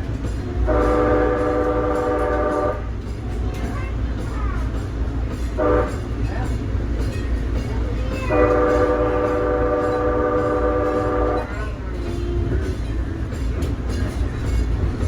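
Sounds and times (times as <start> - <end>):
light rail horn chord: 0.0 - 3.1, 5.4 - 6.3, 8.2 - 15.0.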